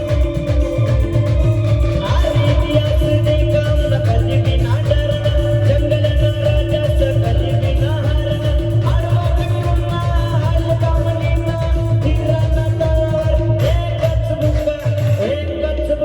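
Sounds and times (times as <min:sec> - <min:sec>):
fast drum beat: 0:00.0 - 0:16.0
keyboard: 0:00.0 - 0:16.0
person singing: 0:00.0 - 0:16.0.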